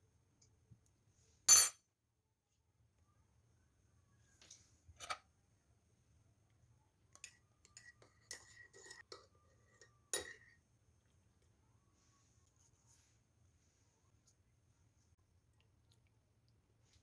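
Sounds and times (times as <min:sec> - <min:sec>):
spoon clinking against cup: 0:07.2 - 0:10.6.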